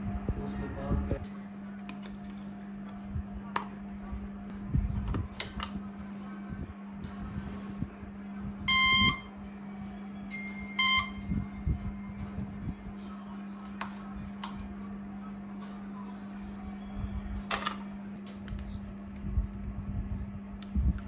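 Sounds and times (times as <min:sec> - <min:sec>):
low hum: 0:00.0 - 0:21.0
short electric beeps: 0:08.7 - 0:09.4, 0:10.7 - 0:11.4.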